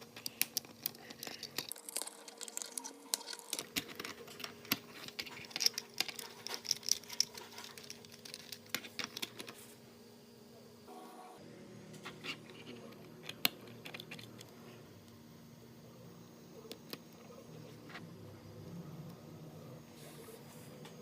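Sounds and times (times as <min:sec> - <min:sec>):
plastic parts clicking and rattling: 0:00.0 - 0:09.6, 0:12.1 - 0:14.5
faint steady hum: 0:00.0 - 0:21.0.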